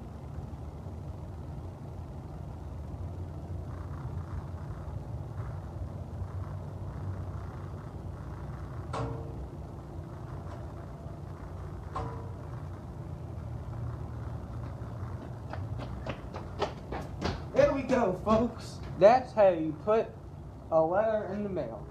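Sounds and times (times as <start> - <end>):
low outdoor rumble: 0.0 - 21.9
metallic clang: 8.9 - 9.5, 11.9 - 12.6.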